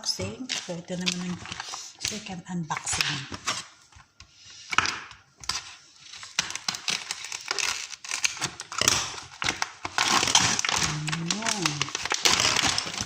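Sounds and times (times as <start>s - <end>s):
shrimp shells cracking: 6.3s - 13.0s.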